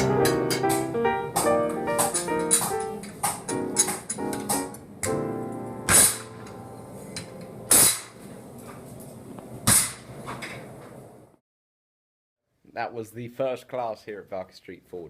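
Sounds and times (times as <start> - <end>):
loud sharp strikes: 0.0 - 5.2, 5.8 - 6.5, 7.2 - 8.2
held piano-like chord: 0.0 - 7.7.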